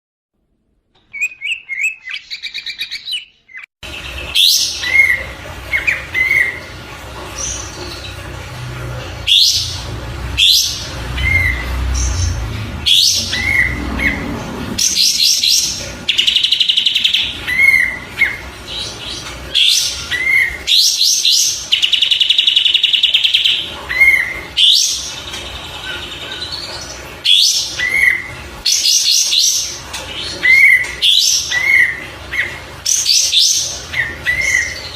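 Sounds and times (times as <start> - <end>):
songbird whistles and chirps: 1.1 - 3.7.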